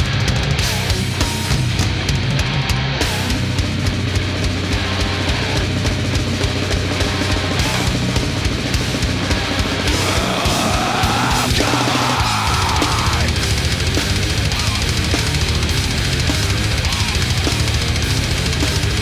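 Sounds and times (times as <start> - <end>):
guitars: 0.0 - 19.0
heavy metal music: 0.0 - 19.0
pounding drum kit: 0.0 - 19.0.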